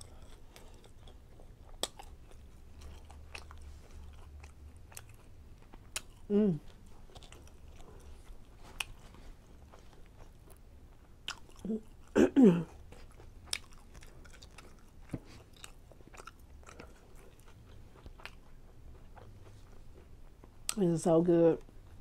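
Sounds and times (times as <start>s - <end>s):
chewing with wet mouth clicks: 0.0s - 20.9s
person humming with enjoyment: 6.3s - 6.6s.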